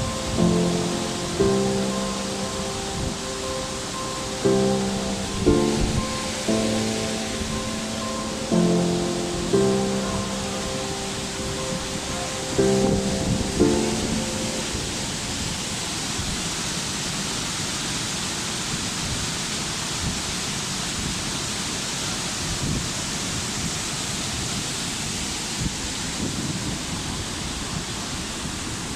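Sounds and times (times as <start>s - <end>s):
background music: 0.0s - 15.7s
waterfall rushing: 0.0s - 28.9s.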